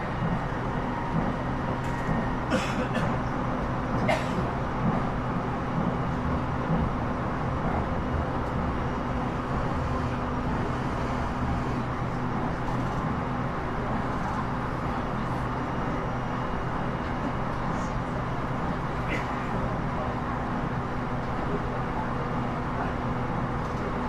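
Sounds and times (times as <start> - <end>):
train wheels rumbling on rail: 0.0 - 24.0.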